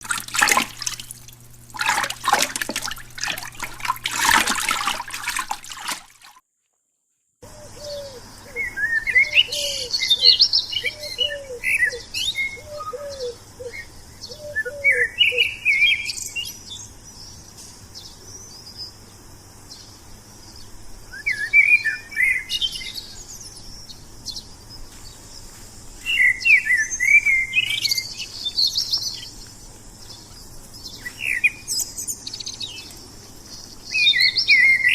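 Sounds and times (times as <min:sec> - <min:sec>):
birds chirping and singing: 0:07.5 - 0:18.9, 0:21.2 - 0:34.9.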